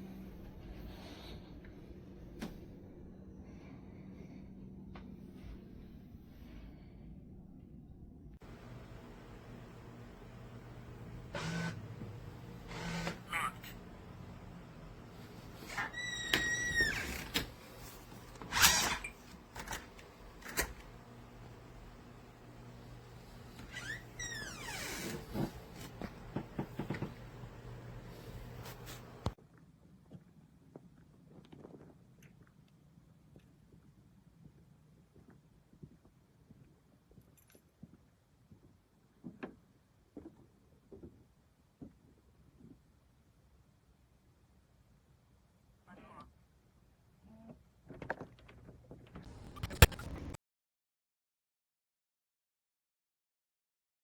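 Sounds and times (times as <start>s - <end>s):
lock motor driving bolt: 8.5s - 17.6s, 18.3s - 23.6s
sharp clicks: 49.3s - 50.4s.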